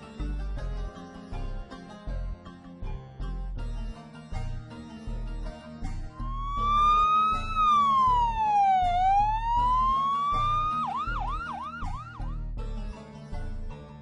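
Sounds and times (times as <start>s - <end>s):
background music with low beat: 0.0s - 14.0s
police siren wailing and yelping: 6.2s - 12.4s.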